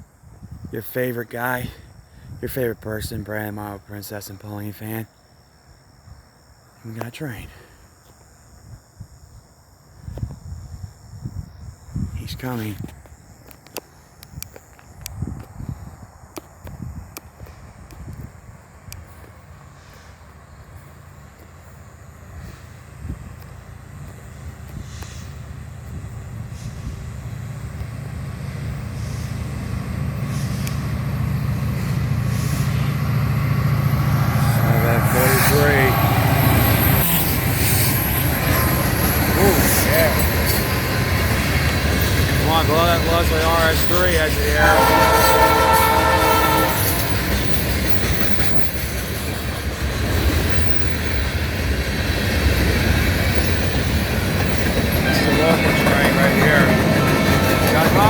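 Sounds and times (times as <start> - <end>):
diesel locomotive engine rumble: 14.8 - 58.0
freight train passing: 18.5 - 58.0
locomotive air horn: 42.4 - 47.7.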